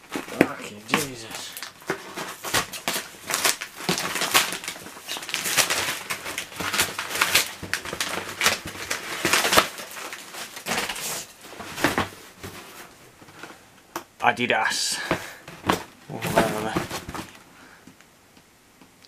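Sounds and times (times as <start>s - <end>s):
packaging tearing and crinkling: 0.0s - 12.2s.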